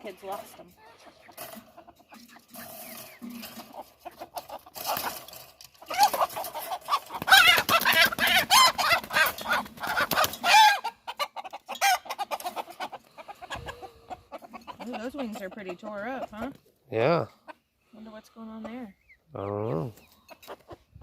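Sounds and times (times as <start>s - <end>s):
chickens clucking and squawking: 0.0s - 21.0s.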